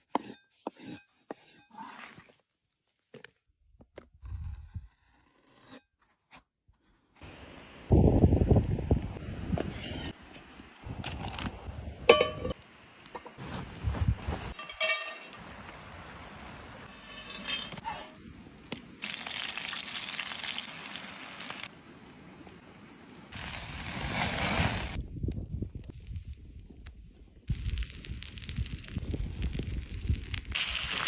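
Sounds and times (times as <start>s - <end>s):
food sizzling: 12.1s - 21.8s, 23.3s - 25.0s, 27.5s - 31.0s.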